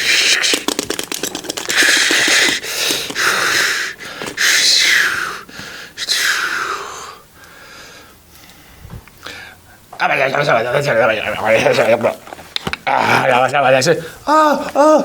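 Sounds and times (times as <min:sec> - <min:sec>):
person hissing and blowing: 0:00.0 - 0:00.9, 0:01.6 - 0:07.2.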